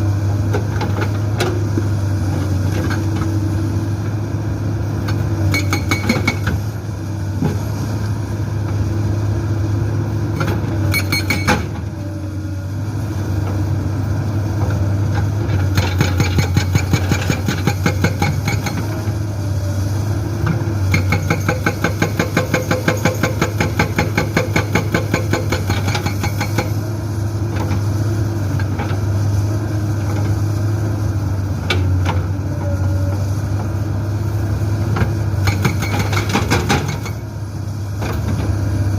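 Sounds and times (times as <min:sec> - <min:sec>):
diesel engine running: 0:00.0 - 0:38.9
hydraulic breaker hammering rock: 0:05.5 - 0:06.6, 0:10.9 - 0:11.8, 0:15.6 - 0:19.0, 0:20.9 - 0:26.8, 0:35.4 - 0:37.2.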